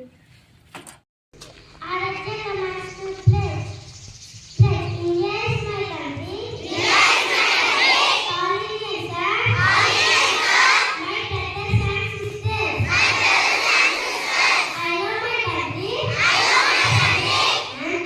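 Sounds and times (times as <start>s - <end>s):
children shouting in unison: 6.6s - 8.3s, 9.6s - 11.0s, 12.9s - 14.8s, 16.1s - 17.8s.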